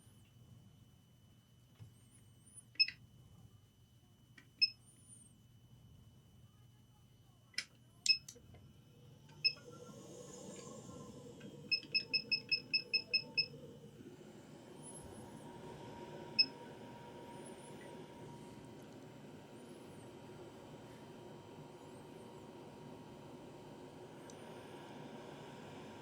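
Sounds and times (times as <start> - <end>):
short electronic beeps: 11.7 - 13.5.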